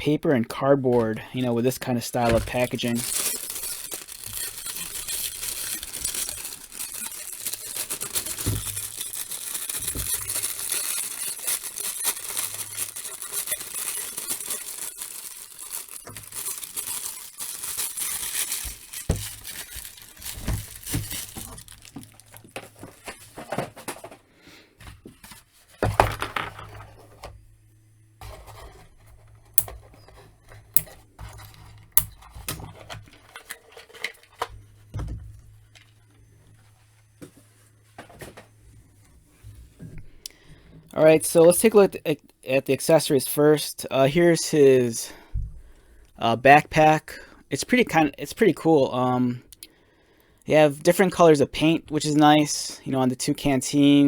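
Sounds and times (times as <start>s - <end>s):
paper and cardboard rustling: 0.8s - 27.3s, 28.2s - 34.9s.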